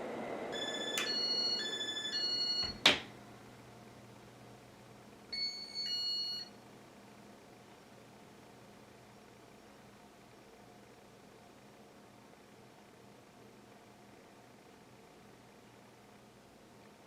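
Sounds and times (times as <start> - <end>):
electronic beeping tones: 0.6 - 2.8.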